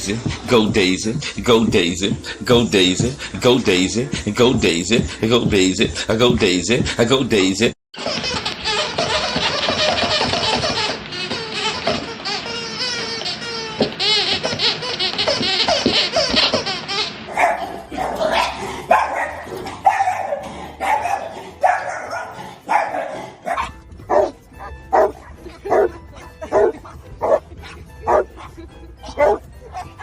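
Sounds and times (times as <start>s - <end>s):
dog barking: 17.3s - 28.5s, 29.1s - 30.0s.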